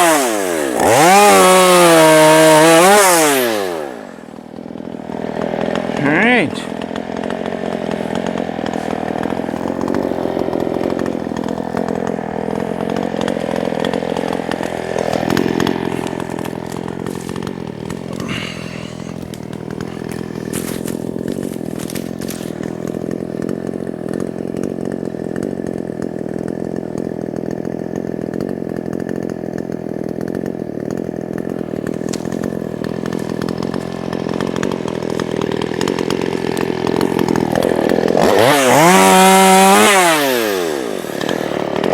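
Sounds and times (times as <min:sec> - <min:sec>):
chainsaw cutting wood: 0:00.0 - 0:41.9.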